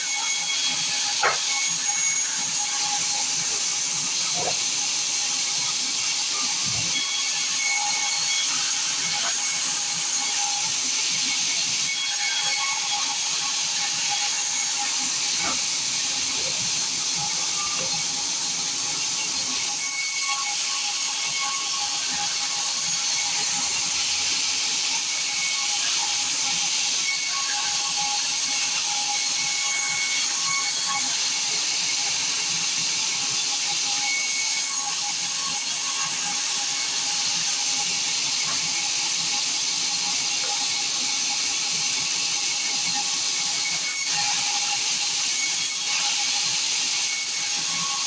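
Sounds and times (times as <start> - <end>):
saw cutting log: 0.0 - 48.0
saw blade cutting log: 0.2 - 10.6, 11.8 - 24.2.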